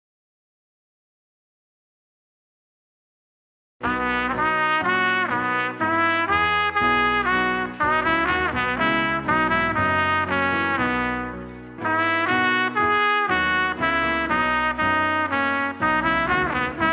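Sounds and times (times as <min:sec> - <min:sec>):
brass instrumental music: 0:03.8 - 0:16.9.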